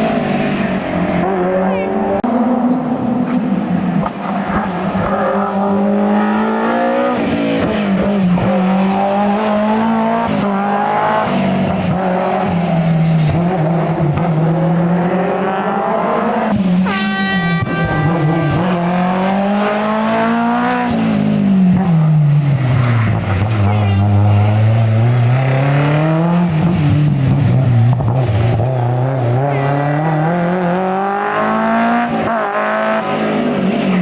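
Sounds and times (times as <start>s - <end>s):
rally car engine revving: 0.0s - 34.0s
tyre squeal: 7.2s - 8.0s.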